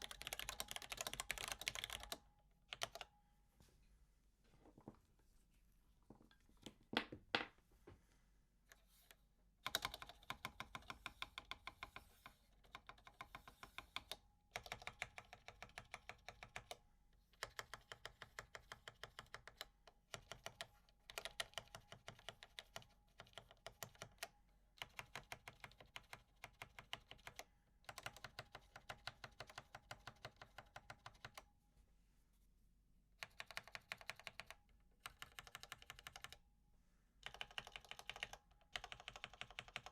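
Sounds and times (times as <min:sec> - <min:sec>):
fast typing on a keyboard: 0:00.0 - 0:03.1, 0:09.6 - 0:31.5, 0:33.2 - 0:36.4, 0:37.2 - 0:39.9.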